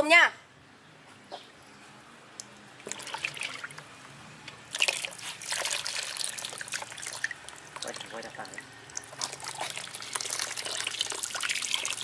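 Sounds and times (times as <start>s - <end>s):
prawns splashing in water: 2.8s - 3.8s, 4.6s - 12.0s.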